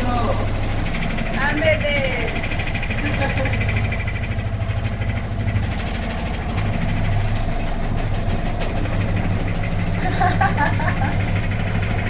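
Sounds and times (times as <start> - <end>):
washing machine humming and rattling: 0.0 - 12.0.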